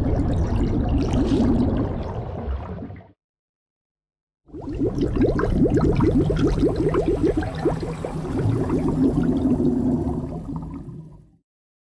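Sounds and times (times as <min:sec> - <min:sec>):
low churning underwater rumble: 0:00.0 - 0:03.2, 0:04.6 - 0:11.4
rising bubbling blips: 0:04.7 - 0:11.1.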